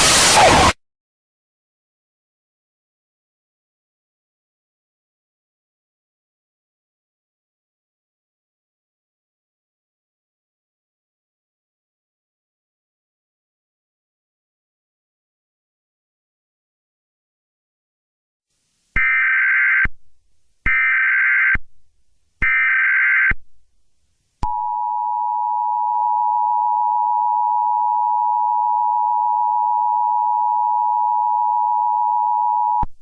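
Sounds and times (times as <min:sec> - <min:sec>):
two-tone attention signal: 0:24.4 - 0:32.9.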